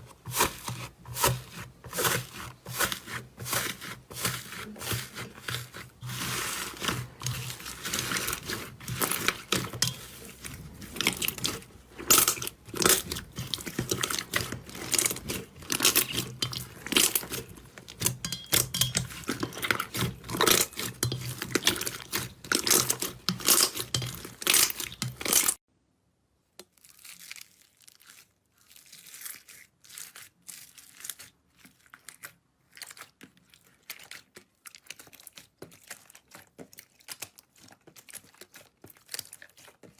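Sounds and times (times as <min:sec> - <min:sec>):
slime crackling and popping: 0:19.4 - 0:25.6.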